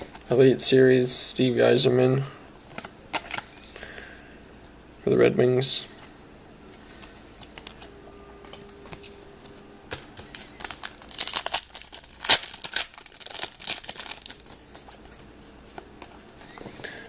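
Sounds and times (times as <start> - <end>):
foil wrapper crinkling: 10.2 - 15.2
cards being handled: 10.2 - 16.8.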